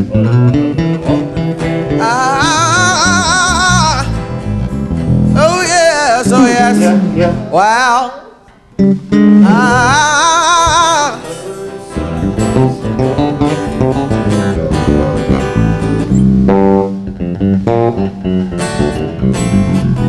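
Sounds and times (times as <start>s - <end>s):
bass line: 0.0s - 7.8s, 8.7s - 11.2s, 11.9s - 20.0s
electric guitar chords: 0.0s - 20.0s
person singing long vibrato note: 2.0s - 4.1s, 5.4s - 8.1s, 9.4s - 11.3s.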